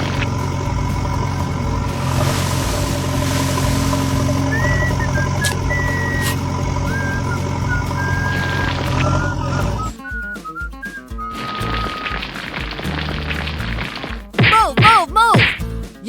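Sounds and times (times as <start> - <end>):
machine engine humming and whining: 0.0 - 9.9.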